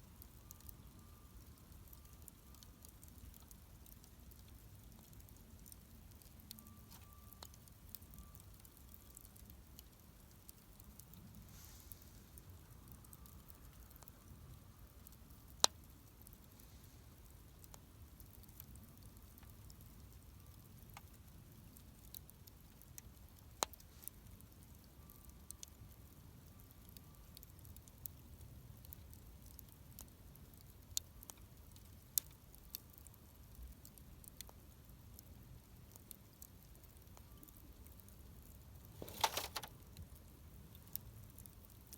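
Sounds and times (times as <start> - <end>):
campfire crackling: 0.0 - 41.9
loud fire snaps: 15.0 - 16.4.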